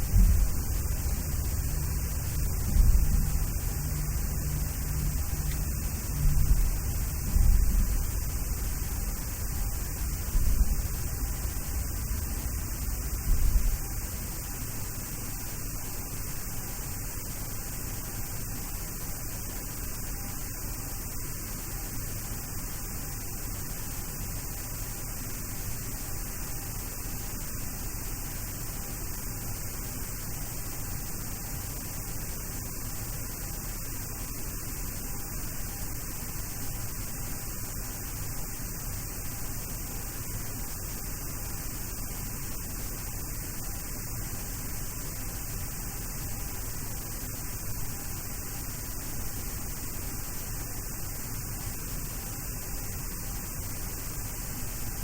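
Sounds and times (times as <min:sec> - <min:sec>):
low hum: 0:00.0 - 0:14.2
cockpit hiss: 0:00.0 - 0:55.0.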